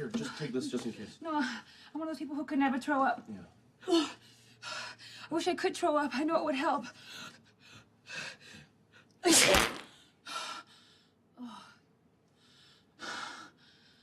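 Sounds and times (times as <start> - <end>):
woman sneezing: 9.2 - 9.8.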